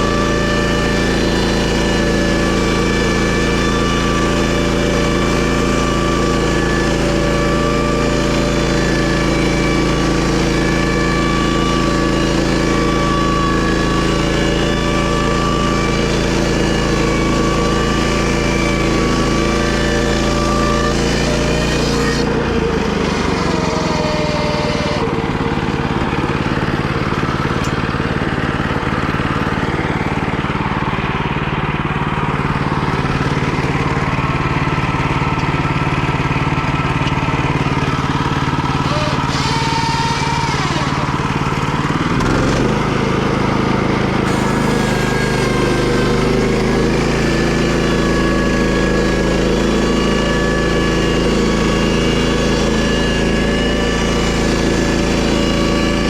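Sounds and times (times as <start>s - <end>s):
small gasoline engine running: 0.0s - 56.0s.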